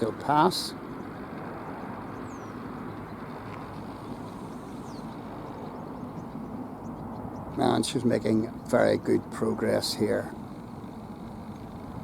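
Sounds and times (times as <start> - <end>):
outdoor low rumble and hiss: 0.0 - 12.0.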